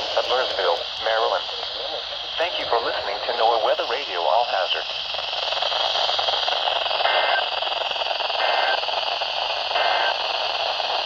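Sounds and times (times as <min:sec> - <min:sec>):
radio static hiss: 0:00.0 - 0:11.0
two-tone digital data bursts: 0:07.0 - 0:07.5, 0:08.4 - 0:08.9, 0:09.7 - 0:10.2.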